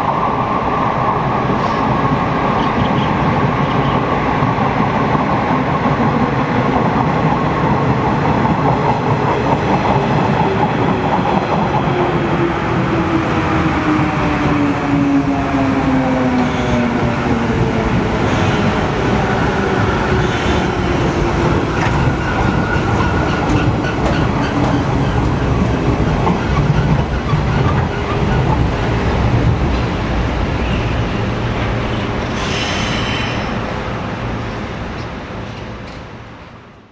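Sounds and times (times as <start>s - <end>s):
train low rumble: 0.0s - 36.9s
wheels clattering on rail joints: 20.6s - 30.0s.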